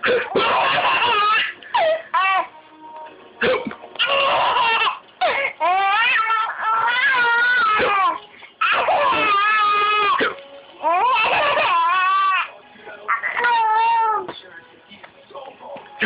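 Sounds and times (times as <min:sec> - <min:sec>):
baby squealing: 0:00.2 - 0:02.5, 0:04.0 - 0:10.2, 0:10.8 - 0:12.5, 0:13.1 - 0:14.3.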